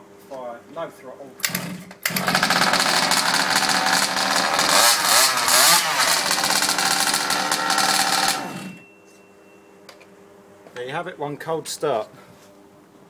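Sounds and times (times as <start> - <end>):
two-stroke engine running: 1.5 - 8.8.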